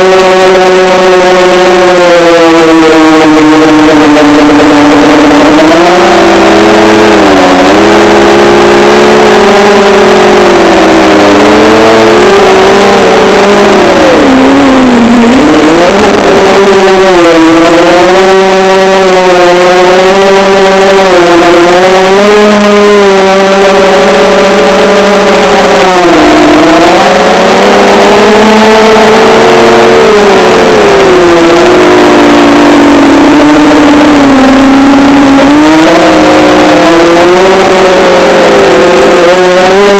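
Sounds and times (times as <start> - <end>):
drone motors whining: 0.0 - 39.9.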